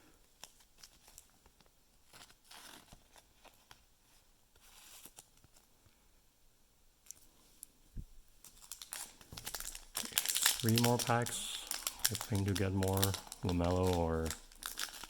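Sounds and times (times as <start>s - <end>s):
trading cards and wrappers rustling: 0.3s - 5.7s, 8.4s - 15.0s.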